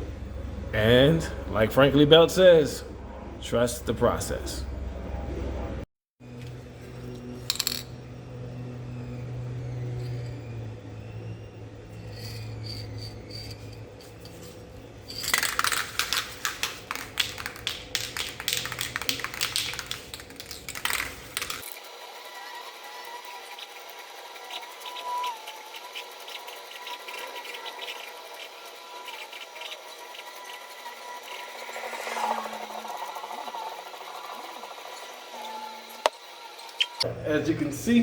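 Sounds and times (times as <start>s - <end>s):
spray can ball rattling: 15.1s - 21.8s.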